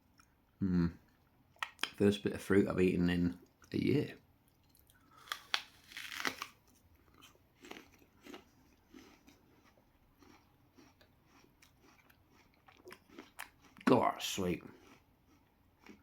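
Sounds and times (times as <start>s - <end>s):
chewing with soft crunches: 0.0s - 2.1s, 3.3s - 16.0s
apple crunching: 4.6s - 16.0s.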